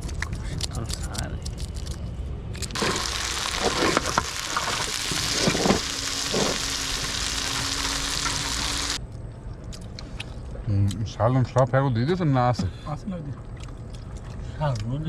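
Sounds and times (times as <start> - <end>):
food sizzling in hot oil: 2.7 - 9.0.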